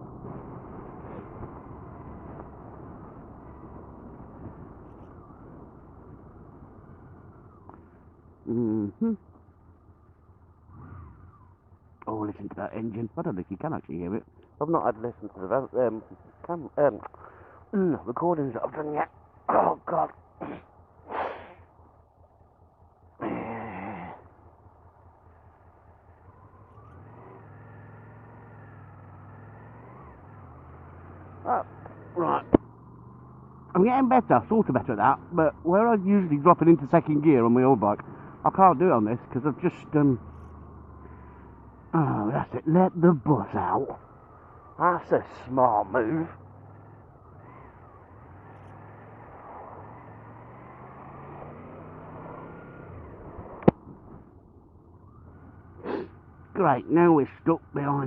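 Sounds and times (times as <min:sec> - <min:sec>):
motorcycle engine running: 0:00.0 - 0:12.1, 0:19.1 - 0:36.4, 0:37.4 - 0:42.1, 0:45.9 - 0:56.6.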